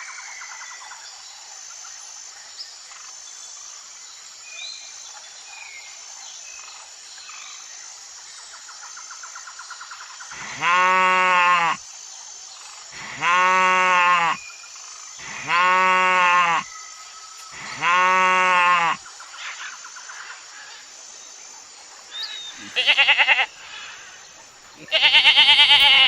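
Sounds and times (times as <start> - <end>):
sheep bleating: 10.5 - 11.8, 13.0 - 14.4, 15.4 - 16.6, 17.8 - 19.0, 22.6 - 23.5, 24.8 - 26.0.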